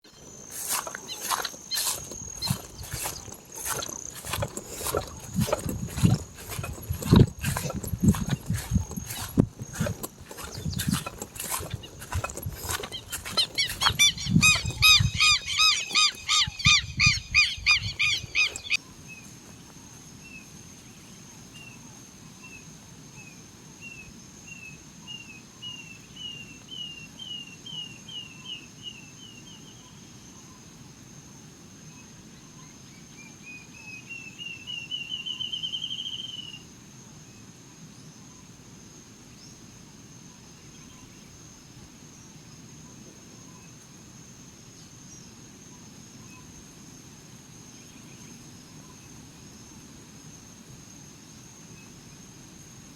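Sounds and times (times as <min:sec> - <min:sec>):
high insect drone: 0:00.1 - 0:25.4
birds calling rapidly: 0:00.6 - 0:18.8.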